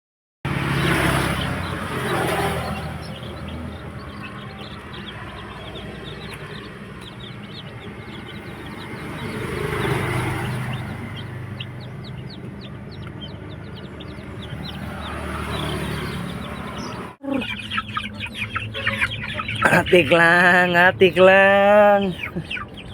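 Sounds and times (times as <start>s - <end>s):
chicks peeping: 0.5s - 22.9s.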